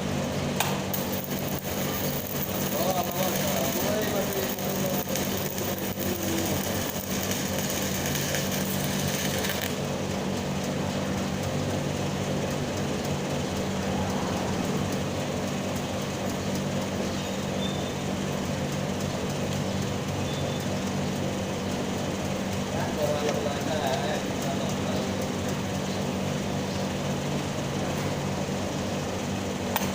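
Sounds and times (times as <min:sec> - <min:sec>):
machine hum: 0:00.0 - 0:29.8
welding arc crackling: 0:00.6 - 0:10.4.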